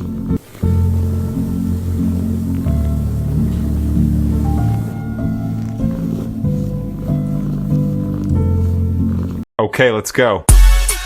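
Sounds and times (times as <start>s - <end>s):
background music with bass line: 10.5s - 11.0s.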